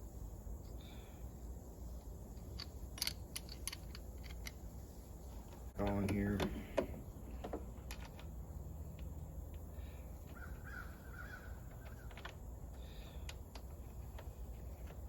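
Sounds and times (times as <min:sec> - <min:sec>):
harsh bird calls: 0:09.8 - 0:13.4.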